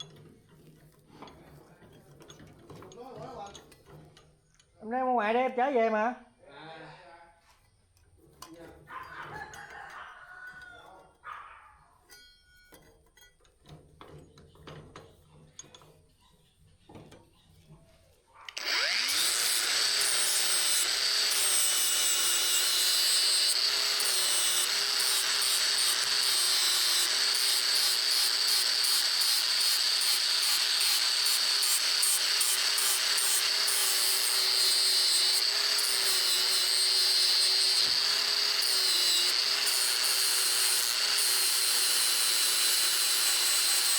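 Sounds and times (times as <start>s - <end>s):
electric power tool running: 18.5s - 43.9s.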